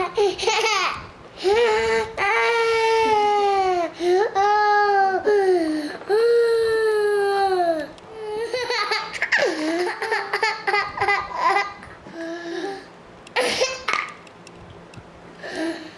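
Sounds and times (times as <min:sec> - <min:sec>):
toddler laughing and giggling: 0:00.0 - 0:05.6, 0:07.1 - 0:14.1
toddler crying: 0:01.5 - 0:12.8.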